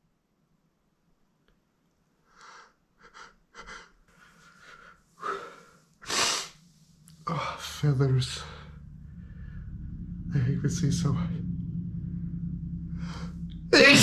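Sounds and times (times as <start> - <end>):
man sniffing and gasping: 2.4 - 6.6.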